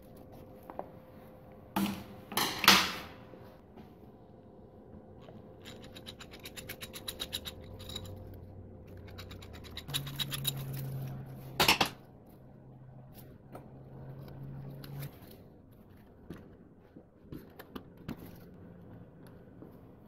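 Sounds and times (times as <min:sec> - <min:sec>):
low steady hum: 0:00.0 - 0:20.0
tool scraping: 0:05.2 - 0:11.6.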